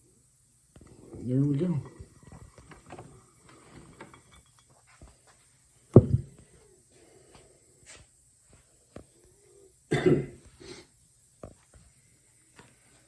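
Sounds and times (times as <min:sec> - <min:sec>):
sharp thump: 0:06.0 - 0:06.3.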